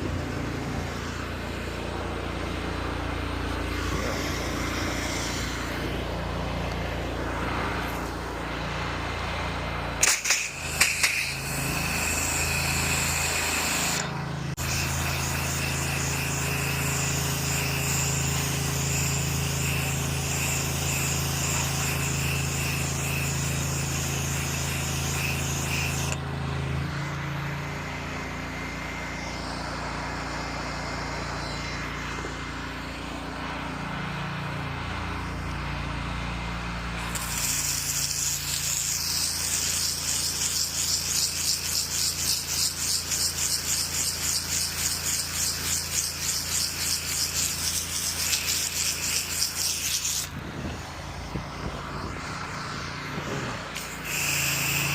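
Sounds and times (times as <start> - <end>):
engine running: 0.0 - 54.9
hissing water spray: 37.0 - 50.3, 53.6 - 54.9.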